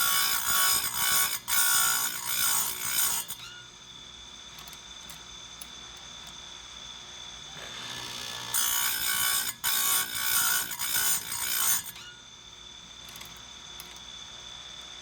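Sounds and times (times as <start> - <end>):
grinding wheel on chain tooth: 0.0 - 3.3.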